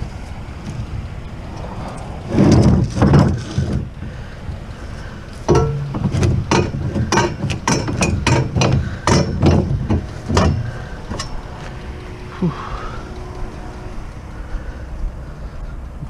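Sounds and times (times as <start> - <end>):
hard knocks and clanks: 2.3 - 4.2, 5.3 - 12.1.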